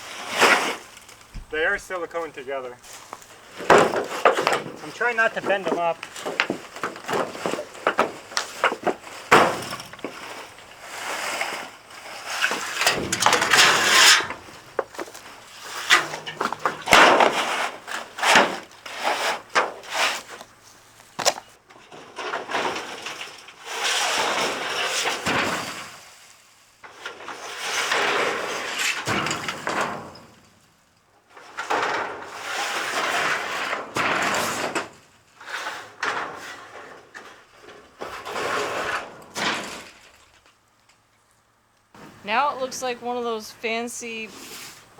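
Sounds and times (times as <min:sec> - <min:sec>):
panels scraping across each other: 0:00.0 - 0:21.4, 0:31.4 - 0:40.2
knocks and rattles of panels: 0:03.4 - 0:10.7, 0:12.5 - 0:15.2.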